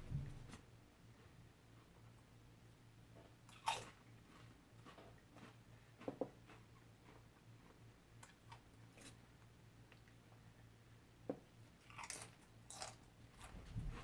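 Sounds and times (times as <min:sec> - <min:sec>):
faint chewing: 0:03.2 - 0:10.2, 0:11.8 - 0:14.0.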